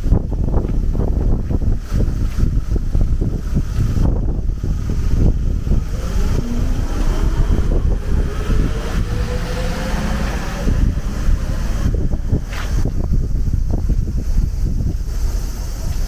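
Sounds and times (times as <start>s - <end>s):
strong wind buffeting microphone: 0.0s - 16.0s
faint rising whine: 3.6s - 14.2s.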